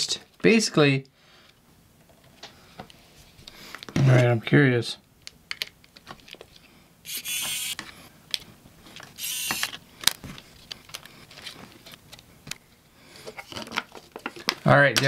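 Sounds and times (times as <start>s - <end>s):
electric screwdriver whirring: 7.1s - 7.8s, 9.2s - 9.8s
small parts clicking: 7.1s - 7.8s, 9.2s - 10.2s.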